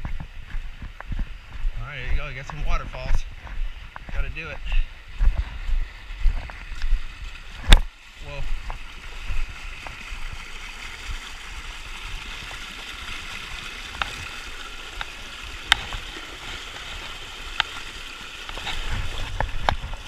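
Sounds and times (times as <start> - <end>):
river water rushing over rocks: 5.2 - 20.0.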